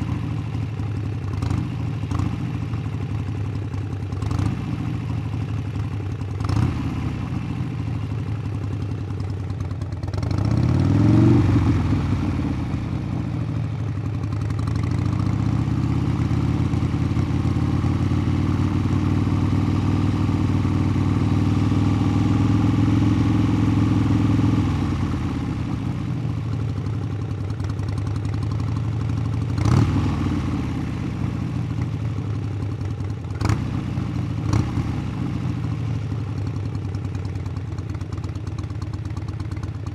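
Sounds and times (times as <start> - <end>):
motorcycle engine revving: 0.0 - 3.4, 4.1 - 39.9.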